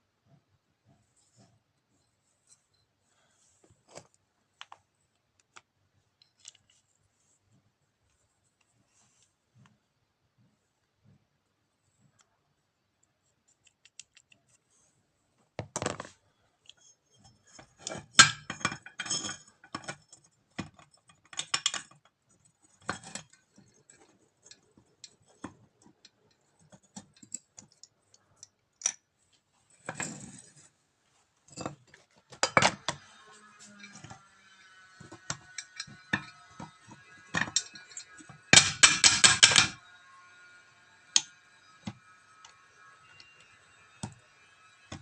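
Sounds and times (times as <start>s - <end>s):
metal tools clinking on workbench: 16.7s - 22.0s, 32.4s - 40.2s.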